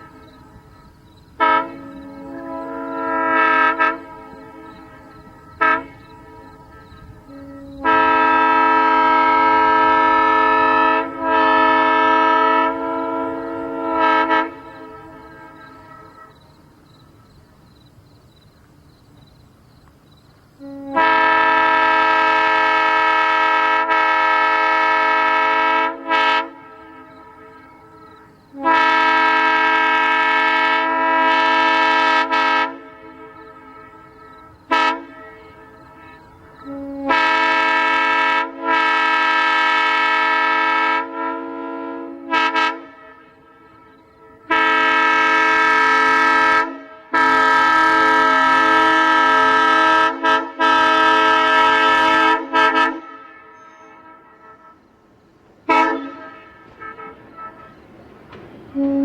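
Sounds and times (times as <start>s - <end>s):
train air horn blasts: 0.0s - 17.2s, 20.5s - 59.0s
short horn toots: 1.4s - 16.3s, 20.6s - 27.9s, 28.6s - 55.0s, 55.7s - 59.0s.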